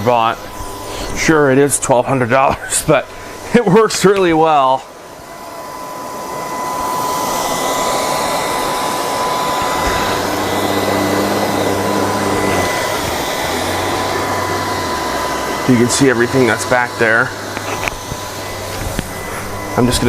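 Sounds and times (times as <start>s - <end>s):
robot vacuum whining: 0.0s - 20.0s
low hum: 4.8s - 20.0s.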